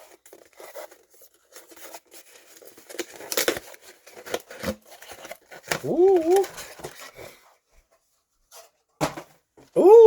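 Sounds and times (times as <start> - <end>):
packaging tearing and rustling: 0.0 - 7.2.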